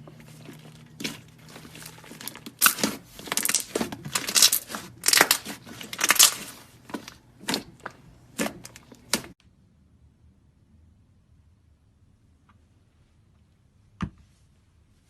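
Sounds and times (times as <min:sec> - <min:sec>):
slime squelching: 0:00.0 - 0:09.4.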